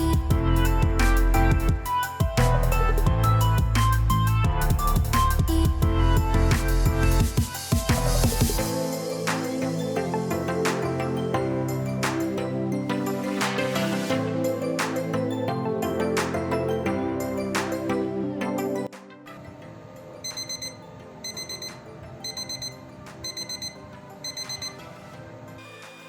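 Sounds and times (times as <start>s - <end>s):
electronic music with drum hits: 0.0s - 18.0s
electronic alarm beeping: 20.2s - 24.9s.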